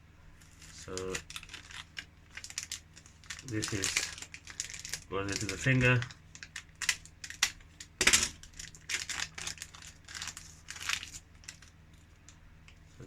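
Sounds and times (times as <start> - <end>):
plastic parts clicking and rattling: 0.4 - 12.4
packaging crinkling: 0.4 - 12.8
loud plastic clack: 6.8 - 8.5.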